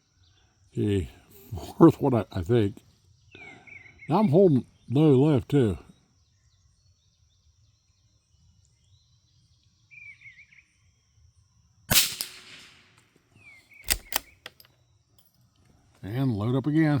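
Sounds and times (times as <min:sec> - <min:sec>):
rifle shot with echo: 0:11.9 - 0:13.0, 0:13.9 - 0:14.5.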